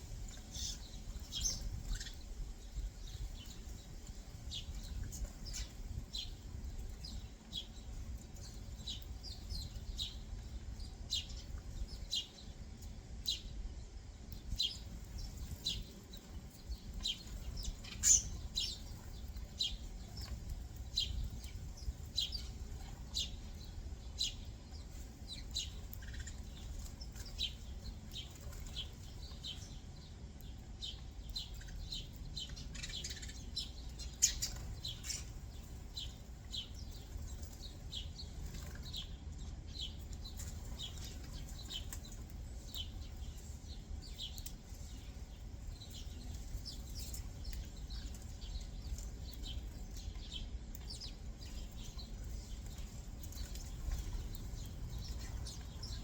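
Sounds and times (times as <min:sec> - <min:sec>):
songbirds chirping: 0:00.0 - 0:56.0.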